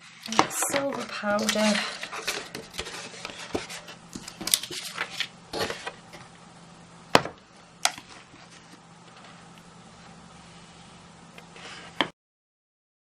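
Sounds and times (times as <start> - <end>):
powder container rustling and tapping: 0.2 - 6.3.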